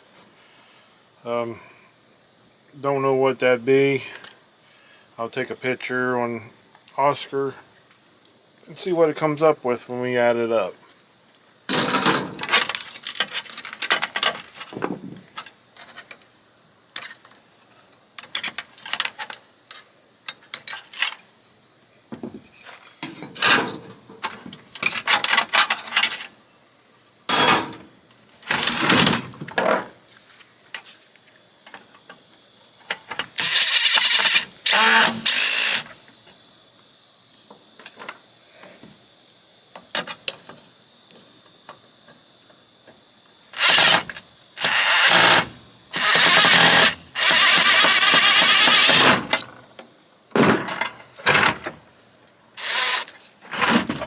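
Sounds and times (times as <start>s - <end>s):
high insect chirring: 33.2s - 36.4s, 43.1s - 49.6s, 52.4s - 53.4s
power tool running in bursts: 33.4s - 36.0s, 43.6s - 49.3s, 52.6s - 53.1s.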